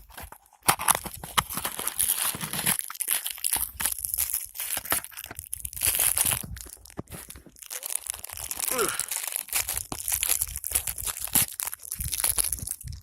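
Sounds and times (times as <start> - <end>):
crinkling and crunching: 0.0 - 13.0.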